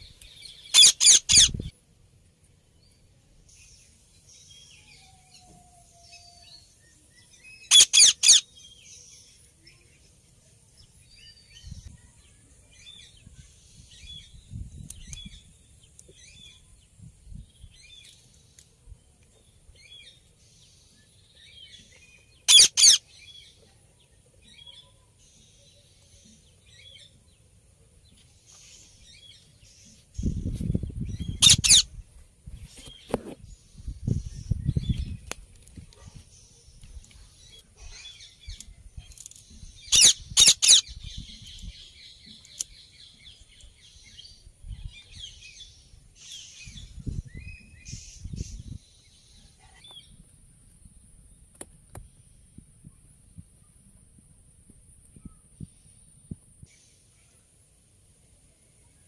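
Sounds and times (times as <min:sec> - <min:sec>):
soft chirps and twitters: 0:00.0 - 0:01.8, 0:22.1 - 0:23.1, 0:28.6 - 0:32.0
parrot screeching: 0:00.7 - 0:01.5, 0:07.7 - 0:08.4, 0:22.5 - 0:23.0, 0:31.4 - 0:31.8, 0:39.9 - 0:40.8.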